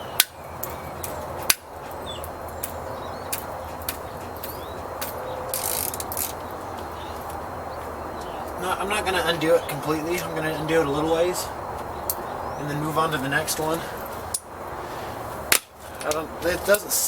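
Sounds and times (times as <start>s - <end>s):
sharp crack: 0.0s - 6.5s, 13.6s - 16.9s
ratchet wrench clicking: 5.5s - 6.4s.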